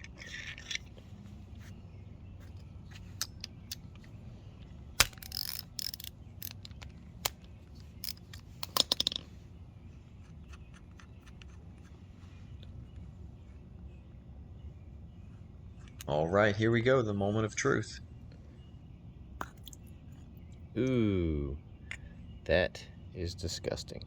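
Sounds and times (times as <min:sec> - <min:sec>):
screwdriver clicking and scraping metal: 0:00.0 - 0:01.0, 0:05.0 - 0:09.2.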